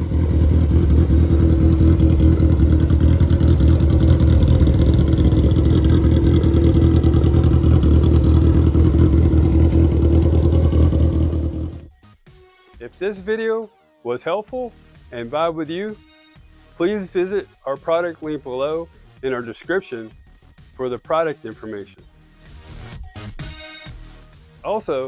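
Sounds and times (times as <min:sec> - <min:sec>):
motorcycle engine running loudly: 0:00.0 - 0:11.9.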